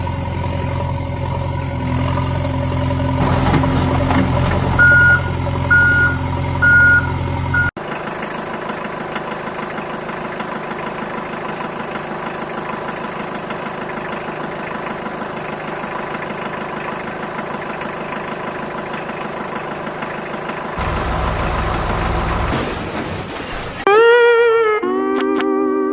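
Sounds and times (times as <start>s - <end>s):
short beeps: 4.8s - 7.7s
steady whirring: 20.8s - 22.9s.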